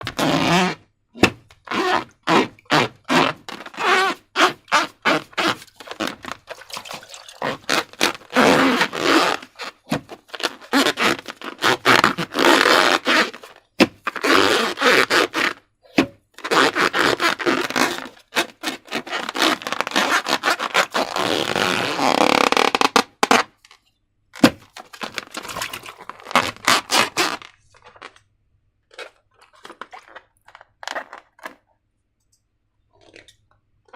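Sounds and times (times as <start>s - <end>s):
slime scraping and crackling: 1.7s - 15.6s, 24.4s - 28.2s, 28.9s - 31.6s.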